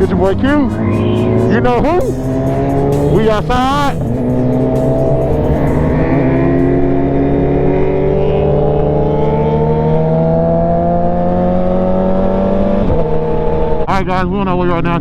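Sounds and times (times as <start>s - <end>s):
motorcycle engine running: 0.0s - 13.8s.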